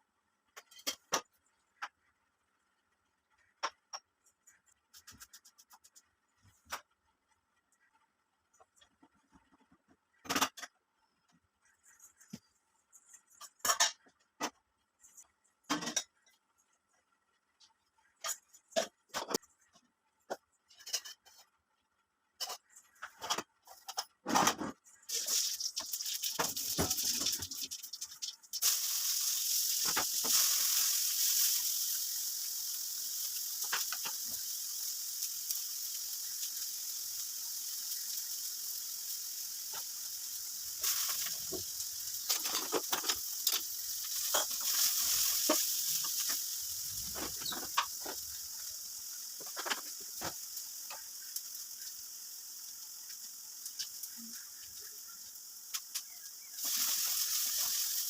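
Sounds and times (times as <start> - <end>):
food sizzling in hot oil: 25.0 - 58.0.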